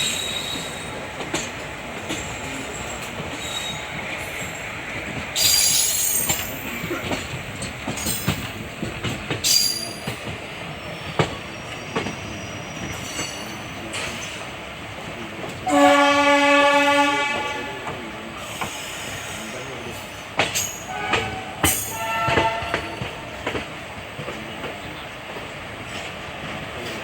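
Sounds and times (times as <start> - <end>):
high wheel squeal: 0.0 - 1.0, 3.3 - 4.6, 5.4 - 6.8, 9.4 - 14.4
train coaches rumbling: 0.0 - 27.0
wheels clicking over rail joints: 5.0 - 10.5, 20.3 - 27.0
locomotive horn blast: 15.6 - 18.0, 20.9 - 23.3.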